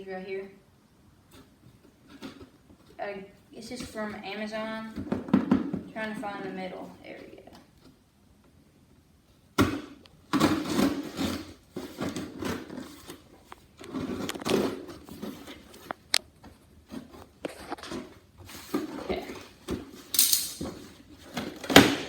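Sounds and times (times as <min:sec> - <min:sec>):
cardboard packaging rustling: 0:10.2 - 0:22.0.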